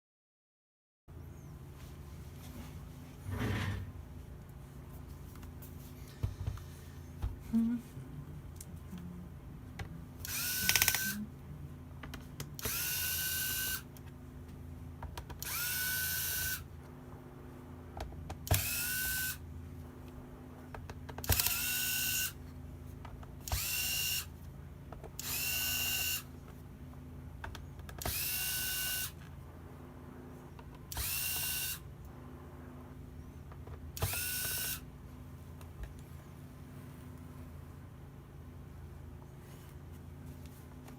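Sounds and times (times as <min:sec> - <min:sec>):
electric screwdriver whining: 0:10.2 - 0:11.2, 0:12.6 - 0:13.9, 0:15.4 - 0:16.7, 0:18.4 - 0:19.4, 0:21.2 - 0:22.4, 0:23.4 - 0:24.3, 0:25.2 - 0:26.3, 0:28.0 - 0:29.2, 0:30.9 - 0:31.8, 0:34.0 - 0:34.8.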